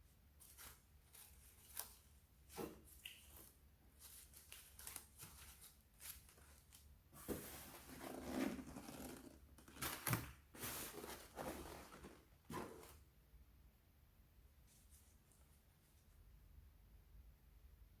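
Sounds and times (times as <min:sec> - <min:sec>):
wrapping material rustling: 0:00.4 - 0:13.0.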